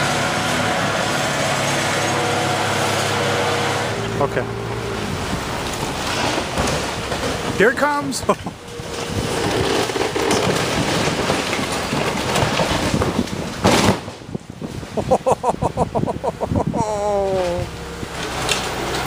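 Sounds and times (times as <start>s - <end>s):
debris crashing: 4.9s - 16.0s
timber cracking: 5.0s - 14.4s.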